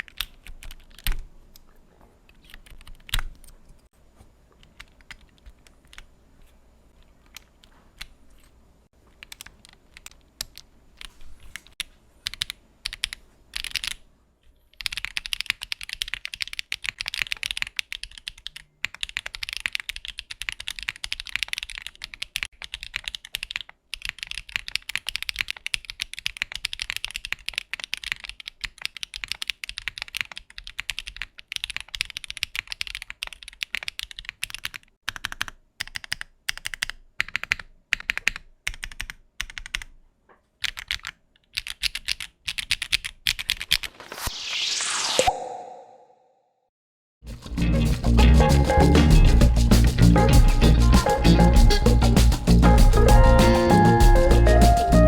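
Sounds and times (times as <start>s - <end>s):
typing on mechanical keyboard: 0.0s - 1.7s, 2.3s - 3.8s, 4.6s - 6.1s, 9.1s - 14.0s, 14.7s - 40.0s, 40.6s - 43.9s.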